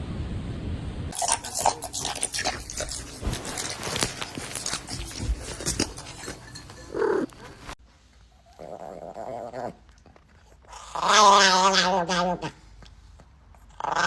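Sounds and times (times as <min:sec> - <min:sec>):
low rumbling noise: 0:00.0 - 0:01.2
animal chewing something crunchy: 0:01.1 - 0:07.8.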